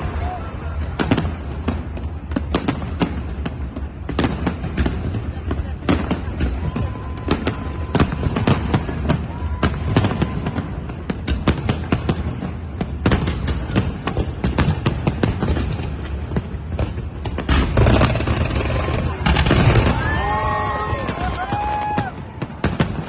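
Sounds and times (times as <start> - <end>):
fireworks bangs and crackles: 0.0 - 23.0.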